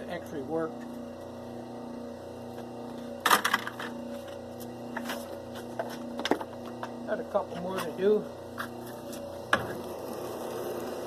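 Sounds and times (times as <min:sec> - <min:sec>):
wire stripping machine humming: 0:00.0 - 0:11.0.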